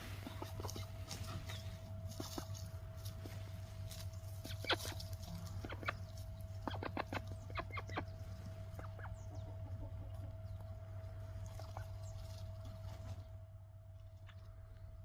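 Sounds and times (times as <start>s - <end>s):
steady low hum: 0.0s - 15.0s
duck calls: 4.4s - 6.0s, 6.6s - 8.1s.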